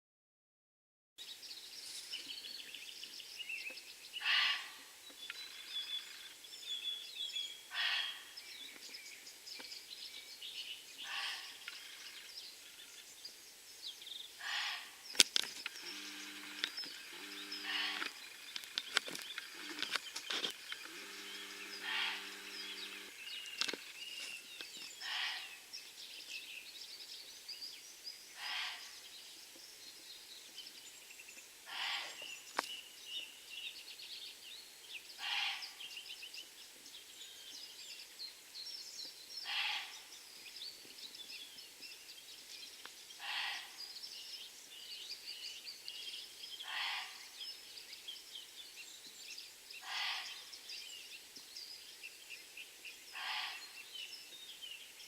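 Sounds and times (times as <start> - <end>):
birds chirping: 1.2 - 55.0
strange animal call: 4.2 - 4.8, 7.7 - 8.3, 11.0 - 12.1, 14.4 - 15.0, 15.8 - 18.4, 19.5 - 20.0, 20.6 - 23.2, 25.0 - 25.6, 28.4 - 28.9, 31.7 - 32.3, 35.2 - 35.7, 39.4 - 40.0, 43.2 - 43.8, 46.6 - 47.2, 49.8 - 50.5, 53.2 - 53.6
sharp clicks: 15.1 - 24.0
low steady hum: 20.6 - 23.6.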